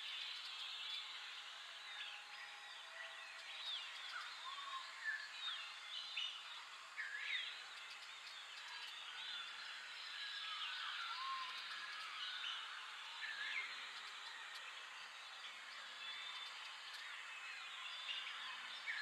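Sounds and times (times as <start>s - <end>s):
small birds chirping and whistling: 3.4s - 14.6s.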